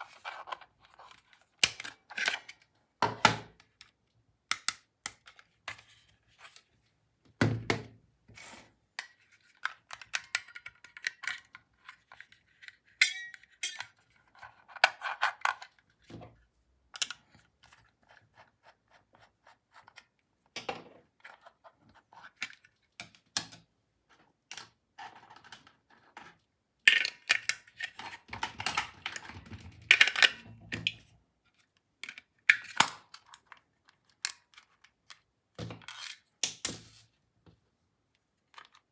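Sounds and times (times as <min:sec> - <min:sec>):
plastic toy parts clicking: 0:04.5 - 0:05.5, 0:09.0 - 0:12.3.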